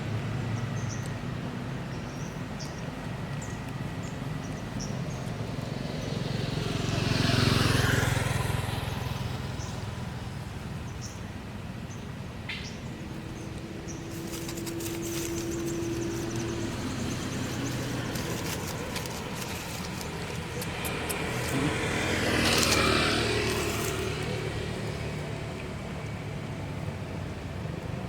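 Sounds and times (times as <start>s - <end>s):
traffic noise: 0.0s - 28.0s
vehicle passing by: 5.3s - 11.1s, 13.1s - 27.4s
fine rapid clicks: 14.1s - 21.6s.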